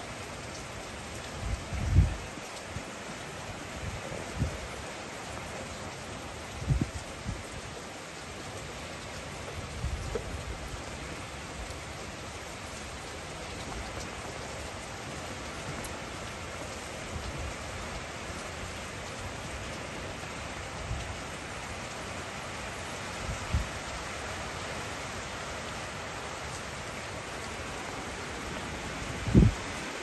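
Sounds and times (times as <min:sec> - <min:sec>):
steady rain falling: 0:00.0 - 0:30.0.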